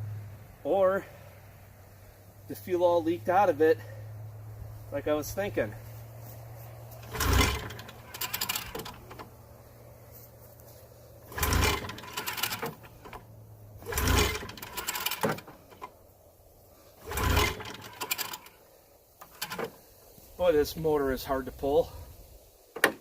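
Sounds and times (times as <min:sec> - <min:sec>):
pull-starter rope rasp: 0:06.9 - 0:09.3, 0:11.2 - 0:15.9, 0:16.9 - 0:18.6, 0:19.2 - 0:20.1
engine turning over: 0:06.9 - 0:10.0, 0:11.1 - 0:16.0, 0:16.6 - 0:20.2.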